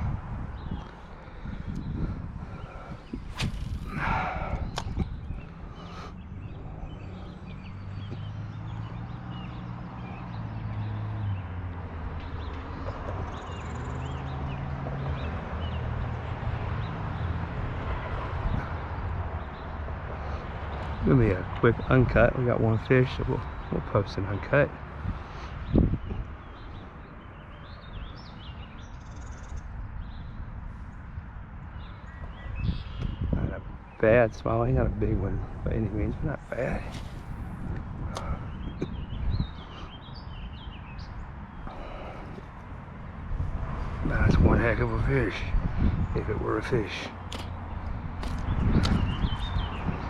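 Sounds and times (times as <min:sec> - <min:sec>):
small birds chirping: 0:00.0 - 0:17.4, 0:18.2 - 0:50.0
songbirds calling: 0:00.0 - 0:50.0.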